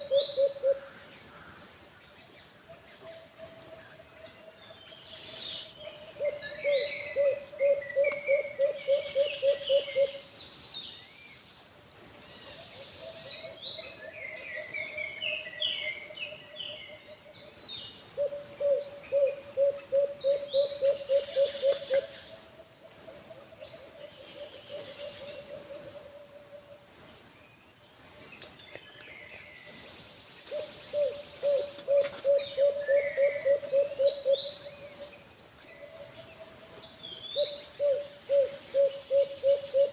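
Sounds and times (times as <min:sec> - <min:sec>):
dove cooing: 0:00.0 - 0:01.1, 0:05.8 - 0:10.3, 0:16.8 - 0:22.3, 0:30.5 - 0:35.1, 0:35.8 - 0:39.9
small birds chirping: 0:00.0 - 0:39.9.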